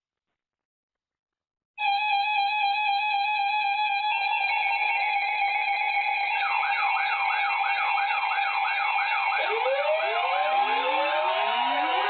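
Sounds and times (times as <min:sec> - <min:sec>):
siren yelp: 0:05.3 - 0:12.0
siren wails: 0:05.7 - 0:12.0
steady siren tones: 0:06.2 - 0:12.0.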